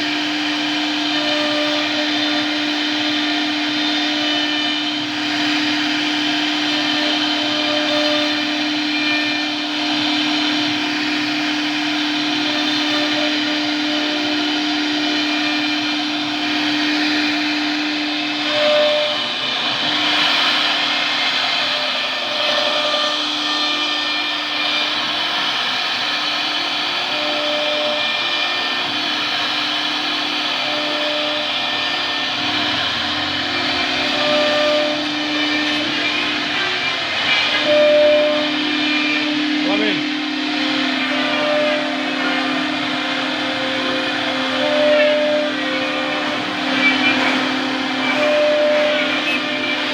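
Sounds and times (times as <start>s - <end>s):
cnc machine motor whine: 0.0s - 49.9s.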